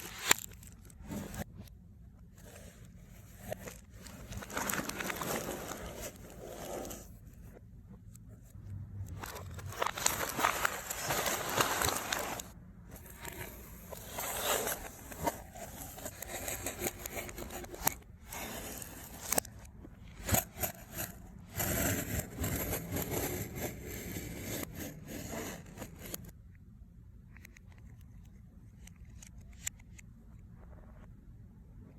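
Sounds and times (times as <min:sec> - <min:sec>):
packaging rustling and scraping: 0:00.0 - 0:01.7, 0:02.4 - 0:07.6, 0:09.0 - 0:26.3.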